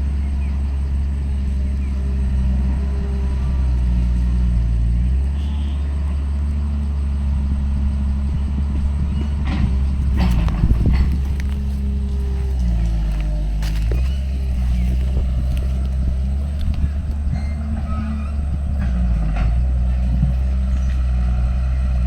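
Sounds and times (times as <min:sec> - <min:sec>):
diesel engine running: 0:00.0 - 0:22.0
metal clanks and knocks: 0:09.2 - 0:20.5.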